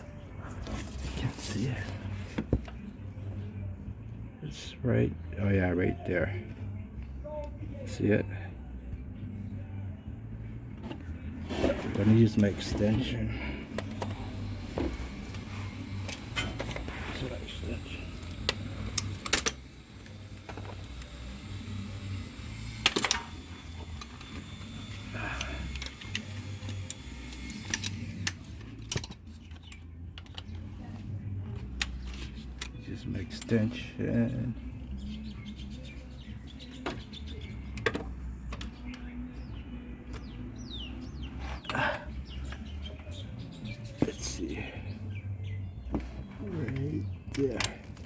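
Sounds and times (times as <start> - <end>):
small birds chirping: 23.4 - 48.0.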